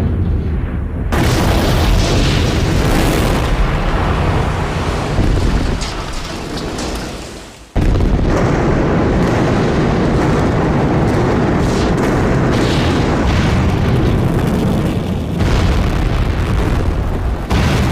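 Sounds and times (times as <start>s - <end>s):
bomb explosion blast: 0.0s - 17.9s
heavy rumble with crackles: 0.0s - 17.9s.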